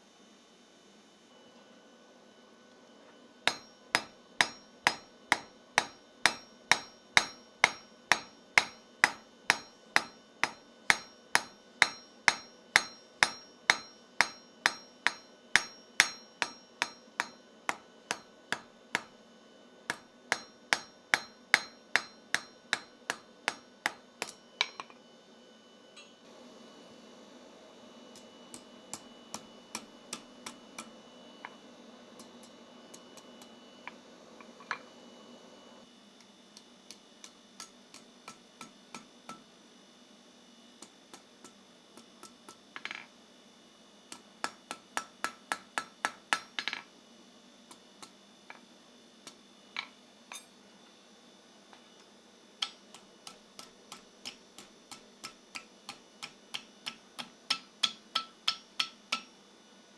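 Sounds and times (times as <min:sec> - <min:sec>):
hammer ringing on anvil: 0:03.5 - 0:19.1, 0:19.9 - 0:24.9, 0:26.0 - 0:26.2, 0:50.3 - 0:50.6, 0:52.6 - 0:59.3.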